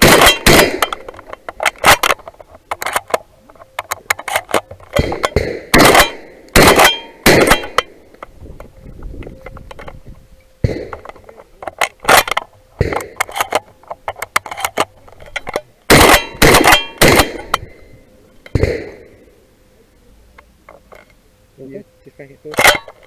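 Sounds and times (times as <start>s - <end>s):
shotgun shots: 0.0s - 1.1s, 5.0s - 8.0s, 10.6s - 11.0s, 15.9s - 17.6s, 18.5s - 19.2s
steel targets ringing: 5.8s - 8.0s, 15.9s - 17.4s.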